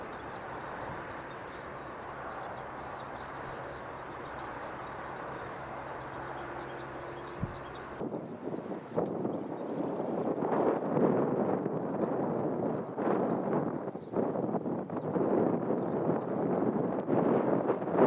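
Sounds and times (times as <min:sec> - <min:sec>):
small birds chirping: 0:00.0 - 0:08.0
steady low hum: 0:00.0 - 0:08.0
wind rumbling on microphone: 0:00.0 - 0:18.0.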